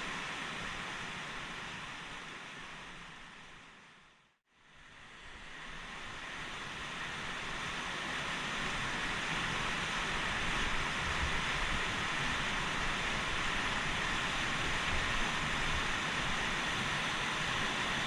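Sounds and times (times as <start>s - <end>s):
fast river rushing: 5.2s - 18.0s.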